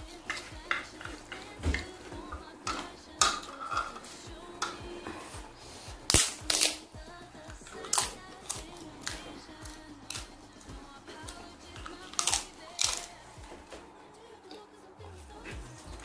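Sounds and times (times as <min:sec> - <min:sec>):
utensils clinking against bowl: 0:00.0 - 0:05.3.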